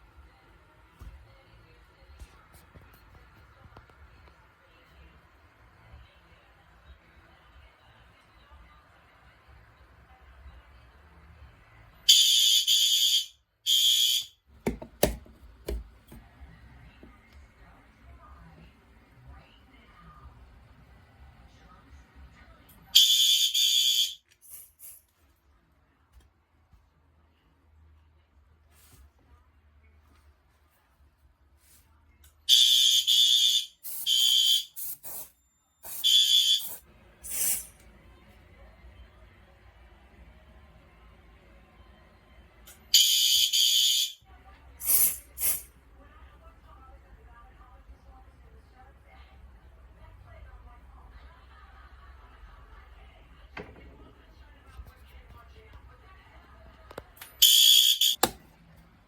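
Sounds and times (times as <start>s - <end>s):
fire alarm horn blasts: 12.1s - 14.4s, 23.0s - 24.3s, 32.5s - 34.8s, 36.0s - 36.7s, 42.9s - 44.2s, 57.4s - 58.3s.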